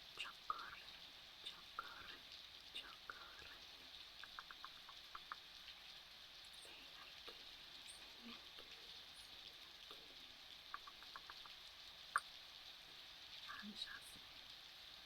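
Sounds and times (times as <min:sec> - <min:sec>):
faint rain hiss: 0:00.0 - 0:15.0
small ticks: 0:00.0 - 0:15.0.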